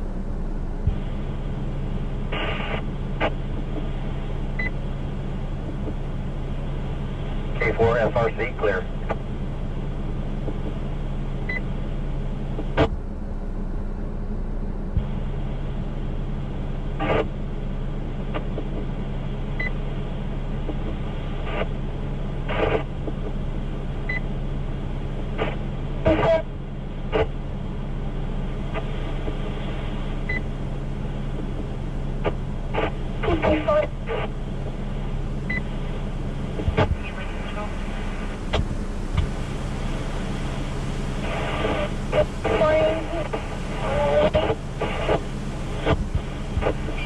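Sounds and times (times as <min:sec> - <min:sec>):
radio scanner hum and hiss: 0:00.0 - 0:47.0
static bursts and squelch clicks: 0:02.3 - 0:04.7, 0:05.5 - 0:06.1, 0:07.6 - 0:09.3, 0:10.4 - 0:10.9, 0:12.5 - 0:13.0, 0:16.9 - 0:17.4, 0:18.3 - 0:18.9, 0:20.6 - 0:21.8, 0:22.4 - 0:23.5, 0:25.3 - 0:27.4, 0:28.7 - 0:30.5, 0:31.2 - 0:47.0.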